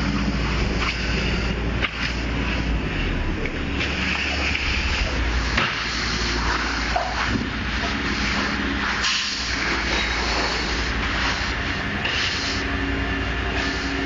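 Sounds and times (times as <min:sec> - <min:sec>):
mechanical drone with low hum: 0:00.0 - 0:14.0
hiss: 0:04.2 - 0:12.7, 0:13.5 - 0:14.0.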